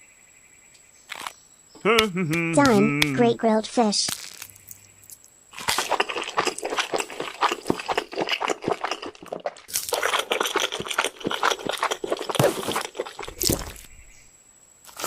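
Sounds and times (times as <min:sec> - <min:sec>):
rapid crunching and crackling: 0:04.0 - 0:14.2.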